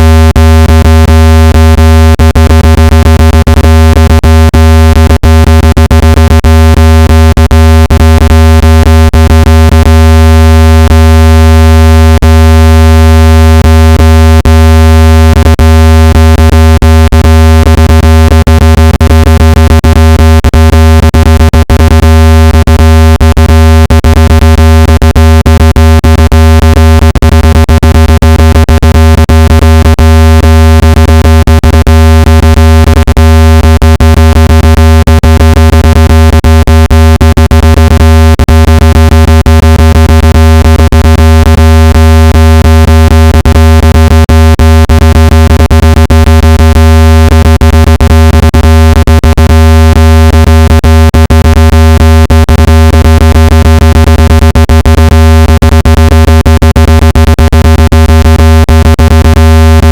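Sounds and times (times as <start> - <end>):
low-pitched buzzing tone: 0.0 - 31.1.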